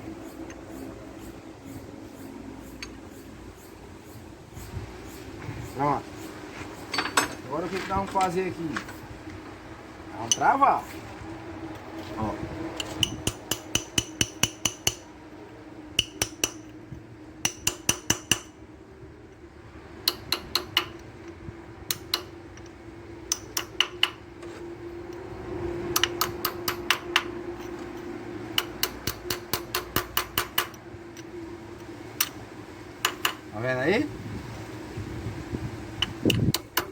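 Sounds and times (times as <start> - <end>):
ratchet wrench clicking: 20.0 - 24.2.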